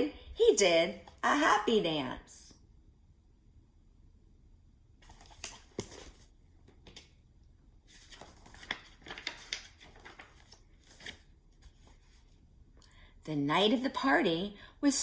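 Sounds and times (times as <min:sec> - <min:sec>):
book pages turning: 0:05.0 - 0:07.2, 0:07.8 - 0:12.4.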